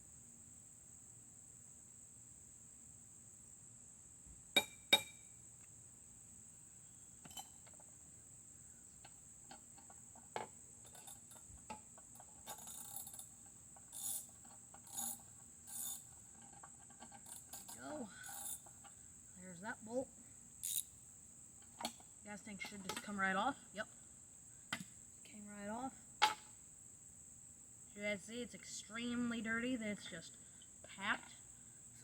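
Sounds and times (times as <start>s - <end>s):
crickets chirring: 0.0s - 32.0s
metallic clinks: 10.8s - 11.5s
ratchet wrench clicking: 12.5s - 13.3s, 13.9s - 16.2s, 17.3s - 18.7s, 20.6s - 20.9s
small clicks: 20.6s - 20.9s.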